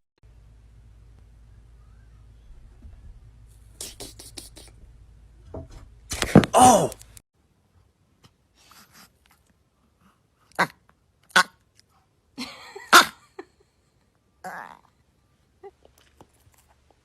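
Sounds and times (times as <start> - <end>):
dog breathing noises: 8.5 - 10.4
dog making cough-like sounds: 12.9 - 13.2.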